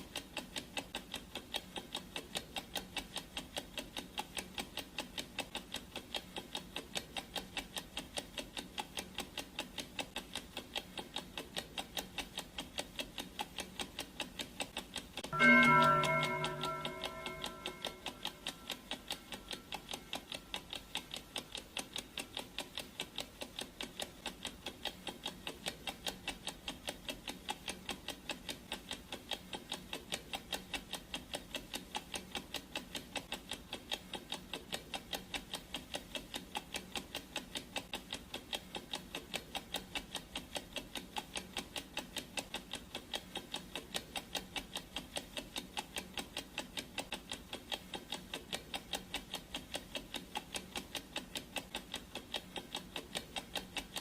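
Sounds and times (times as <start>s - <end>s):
clock ticking: 0.0s - 54.0s.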